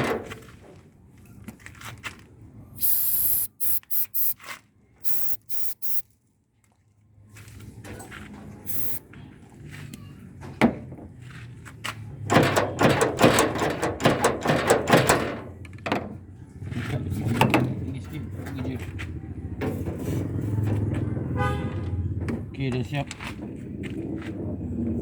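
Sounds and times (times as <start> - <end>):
lubricant spray hiss: 2.8 - 4.4, 5.0 - 6.0, 8.7 - 9.0.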